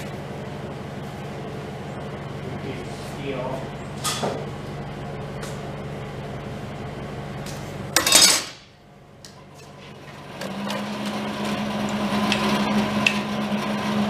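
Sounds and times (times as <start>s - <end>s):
higher steady hum: 0.0s - 14.0s
steady machine hum: 0.0s - 14.0s
metallic clatter of steel pieces: 8.0s - 8.6s.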